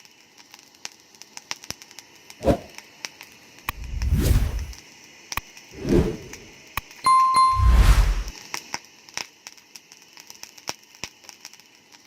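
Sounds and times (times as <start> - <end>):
low whoosh: 3.7 - 4.8, 5.8 - 6.5, 7.5 - 8.3
bright ding: 7.1 - 8.0.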